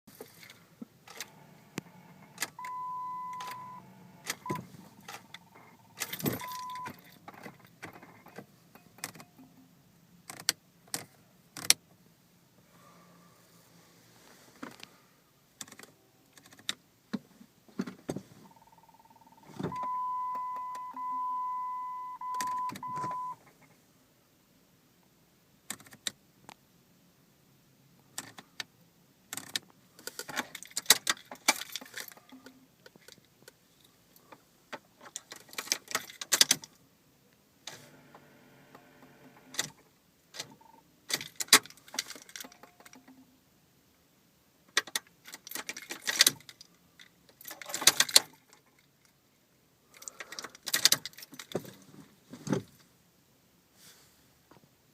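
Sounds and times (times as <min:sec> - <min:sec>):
ignition clicks and key rattles: 0:02.2 - 0:11.8, 0:15.6 - 0:16.8, 0:17.8 - 0:23.7, 0:25.7 - 0:26.2, 0:28.1 - 0:28.7, 0:29.3 - 0:33.9, 0:34.8 - 0:36.8, 0:39.5 - 0:43.2, 0:44.7 - 0:49.2, 0:49.9 - 0:51.9
electronic warning tone: 0:02.6 - 0:06.9, 0:18.5 - 0:23.4.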